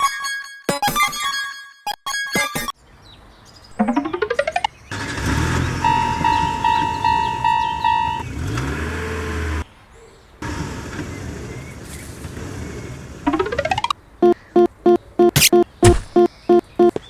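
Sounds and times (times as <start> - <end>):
vehicle-like rumble: 4.9 - 9.7, 10.4 - 13.9
crossing warning bell beeping: 5.2 - 8.5, 13.3 - 17.0.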